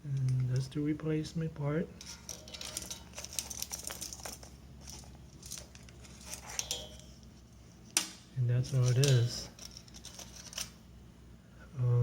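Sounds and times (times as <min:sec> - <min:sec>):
thin plastic crinkling: 0:02.0 - 0:07.3, 0:08.7 - 0:10.8.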